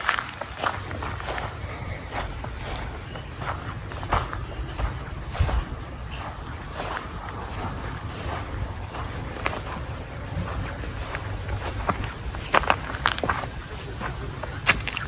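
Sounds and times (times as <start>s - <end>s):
crunching footsteps: 0.0s - 15.0s
insect chirping: 0.0s - 15.0s.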